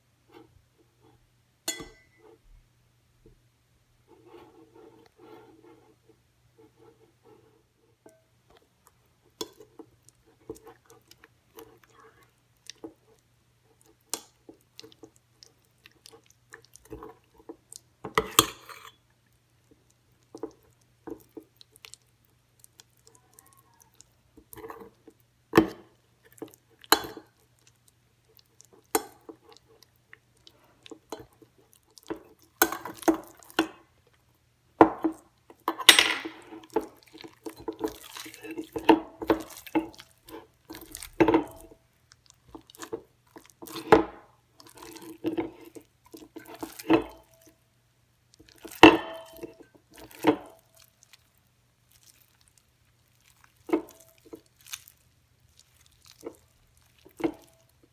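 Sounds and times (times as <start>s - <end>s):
utensil clinking against bowl: 1.7s - 2.3s.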